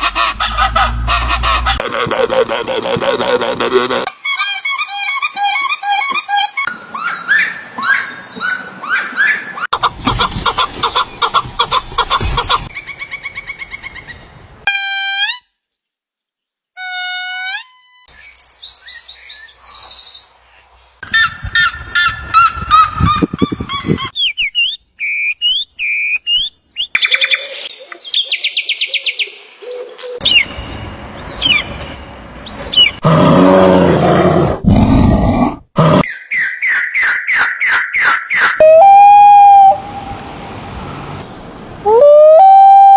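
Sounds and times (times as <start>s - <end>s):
bird calls and chirps: 4.2s - 14.4s, 18.1s - 33.0s, 36.0s - 39.0s.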